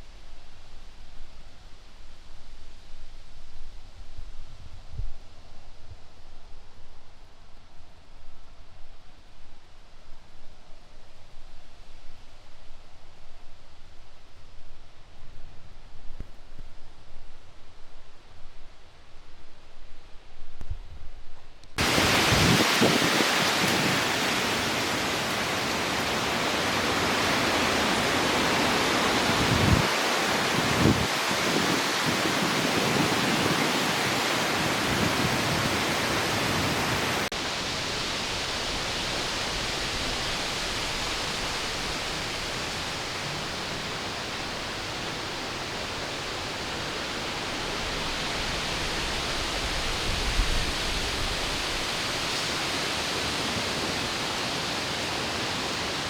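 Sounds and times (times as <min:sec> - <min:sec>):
wind rushing through trees: 0:00.0 - 0:56.0
wind buffeting microphone: 0:19.9 - 0:25.2, 0:27.4 - 0:52.4.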